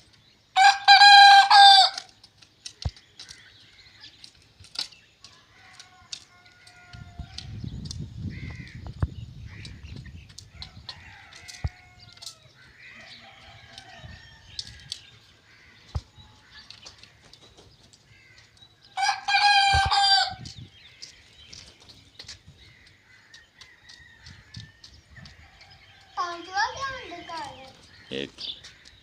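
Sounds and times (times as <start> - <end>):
rooster crowing: 0.6 - 2.1, 19.0 - 20.4
hens clucking: 15.8 - 22.3.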